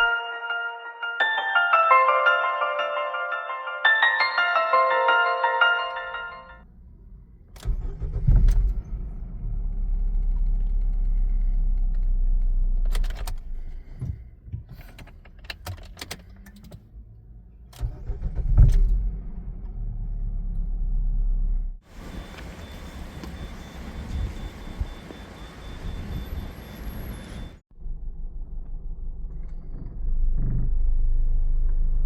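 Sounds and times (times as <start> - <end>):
car engine rumbling: 6.6 - 24.9
engine knocks and clicks: 7.5 - 17.0, 17.6 - 21.5, 28.1 - 32.0.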